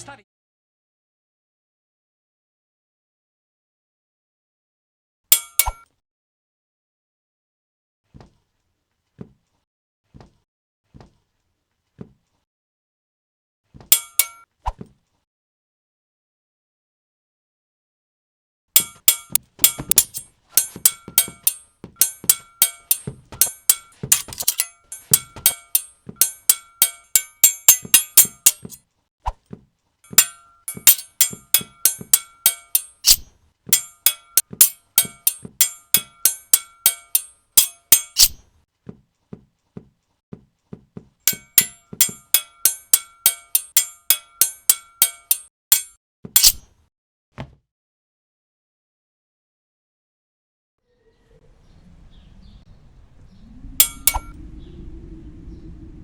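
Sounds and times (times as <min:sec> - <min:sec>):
metallic sword clashes: 0:18.8 - 0:28.8, 0:30.1 - 0:38.4, 0:41.3 - 0:46.7, 0:53.8 - 0:54.3.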